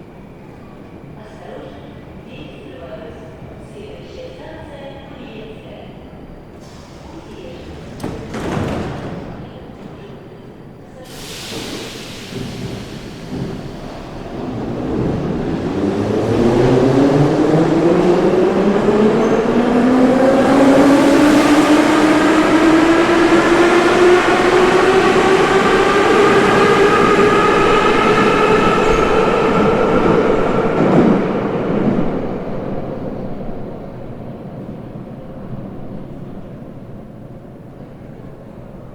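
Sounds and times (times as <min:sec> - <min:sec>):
rumble of running train: 0:06.3 - 0:38.9.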